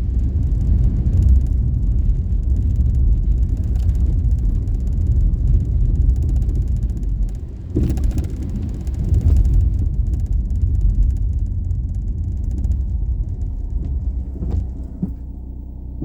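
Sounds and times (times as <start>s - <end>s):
car engine and road noise: 0.0s - 16.0s.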